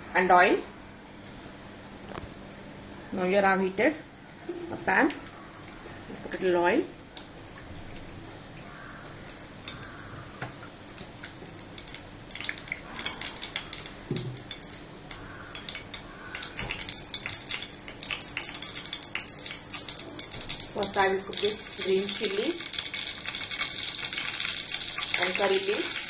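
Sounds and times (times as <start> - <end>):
oil sizzling in frying pan: 10.8 - 26.0.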